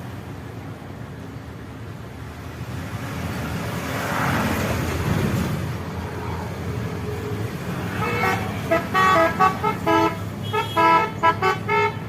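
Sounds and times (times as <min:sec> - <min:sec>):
engine and road noise: 0:00.0 - 0:12.0
musical air horn tune: 0:08.0 - 0:12.0.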